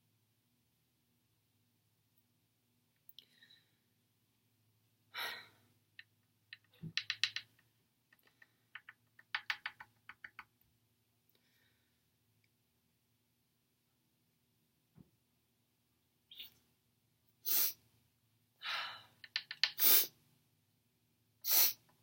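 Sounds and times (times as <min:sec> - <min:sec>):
quick sharp clicking: 0:06.5 - 0:07.6, 0:19.2 - 0:20.1
sharp sniff: 0:17.4 - 0:17.8, 0:19.6 - 0:20.2, 0:21.4 - 0:21.9.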